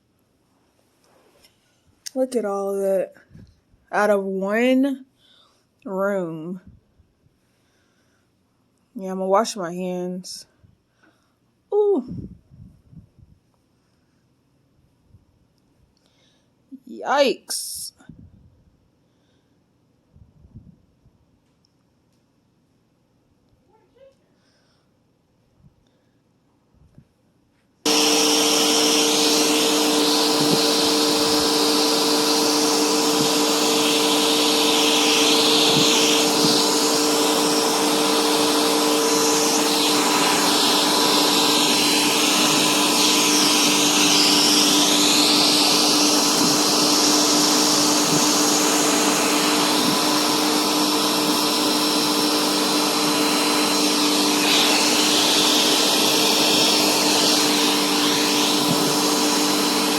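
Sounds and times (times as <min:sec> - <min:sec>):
vacuum cleaner running: 0:27.9 - 0:59.9.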